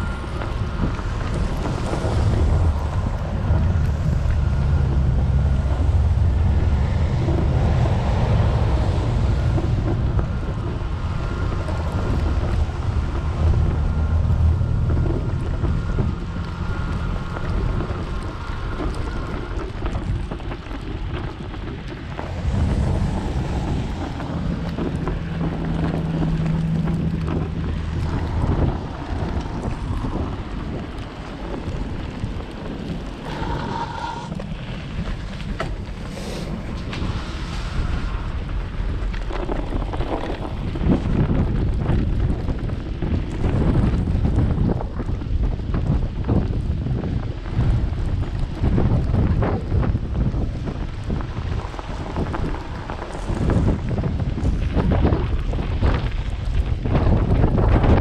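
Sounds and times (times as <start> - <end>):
wind buffeting microphone: 0.0 - 58.0
faint steady whine: 21.9 - 41.4.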